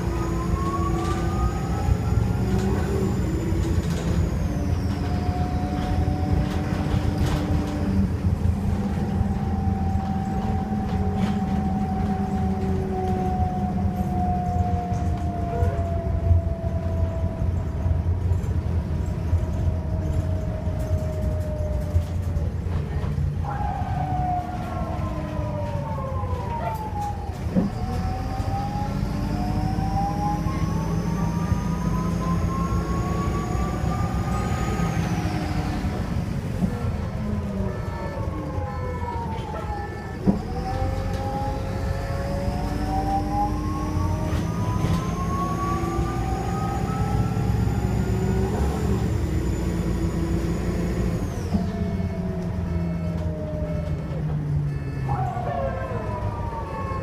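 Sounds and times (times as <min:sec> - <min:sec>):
bus diesel engine drone: 0:00.0 - 0:57.0
whining gear tones: 0:00.0 - 0:57.0.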